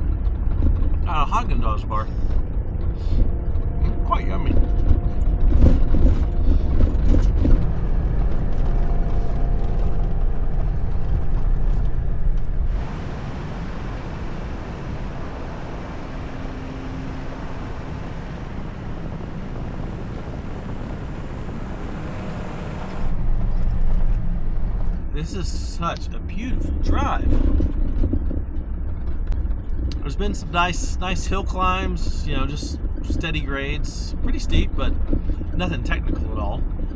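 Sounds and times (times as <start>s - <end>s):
rattles and knocks: 0.0s - 12.8s, 23.1s - 36.9s
vehicle road rumble: 0.0s - 36.9s.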